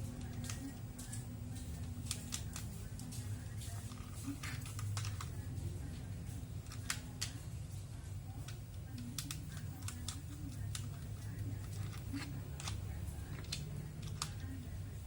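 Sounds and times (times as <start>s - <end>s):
steady low hum: 0.0s - 15.0s
plastic toy parts clicking: 1.8s - 3.1s, 3.8s - 5.3s, 6.6s - 7.4s, 8.4s - 14.6s.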